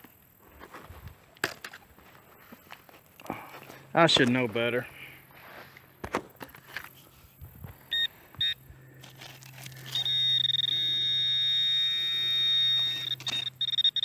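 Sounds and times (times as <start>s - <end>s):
metal detector beeps: 7.8s - 14.0s
metal detector high tone: 7.9s - 14.0s.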